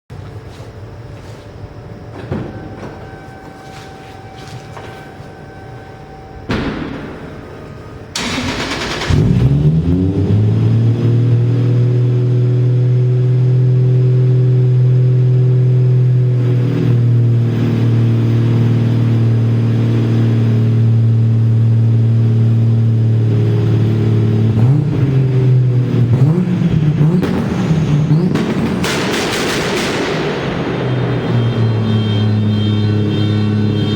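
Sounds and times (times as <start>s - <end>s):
sharp exhaust bang: 6.4s - 10.2s, 27.2s - 33.6s
exhaust popping: 6.5s - 12.0s, 24.4s - 33.2s
car engine on launch limiter: 6.8s - 33.9s.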